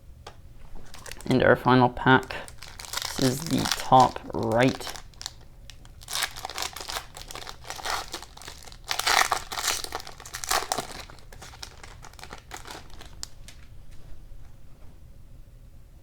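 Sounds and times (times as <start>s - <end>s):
card pack wrapper crinkling: 0.6s - 1.5s, 2.1s - 14.0s.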